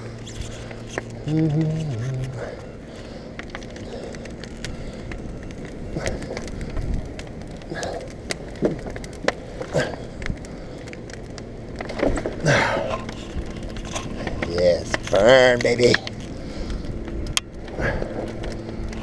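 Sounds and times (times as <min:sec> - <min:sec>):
fire crackling and popping: 0:00.0 - 0:19.0
low steady rumble: 0:00.0 - 0:19.0.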